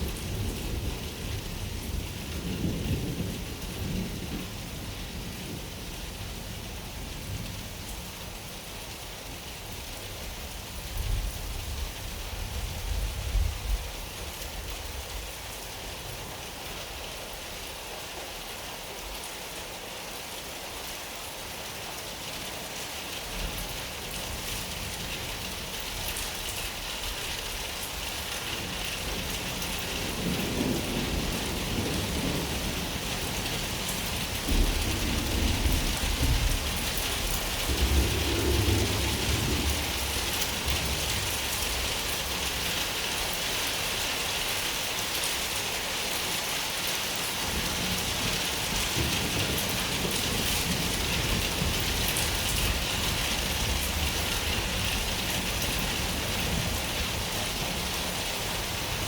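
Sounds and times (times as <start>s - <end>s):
rain hissing: 22.6s - 59.0s
thunder rumbling: 29.2s - 41.8s.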